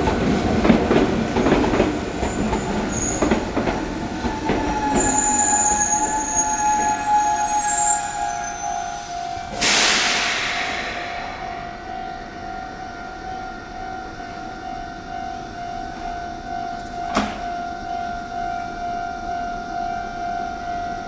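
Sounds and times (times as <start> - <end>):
level-crossing alarm ringing: 0.0 - 9.6, 11.2 - 21.0
passing train: 0.0 - 21.0
sharp clank: 9.6 - 12.6.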